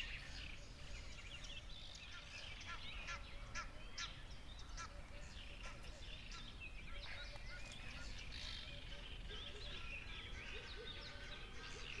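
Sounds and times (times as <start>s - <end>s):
songbirds chirping: 0.0s - 12.0s.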